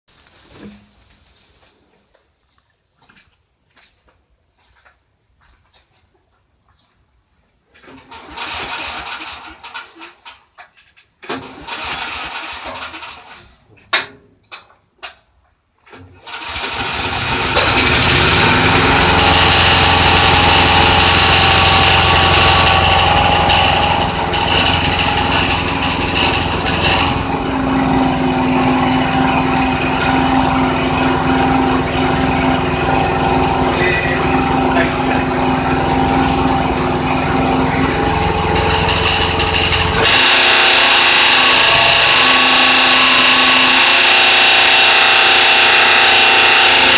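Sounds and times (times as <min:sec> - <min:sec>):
small engine cranking and running: 0:08.2 - 0:10.1, 0:11.4 - 0:13.4, 0:16.2 - 0:46.9.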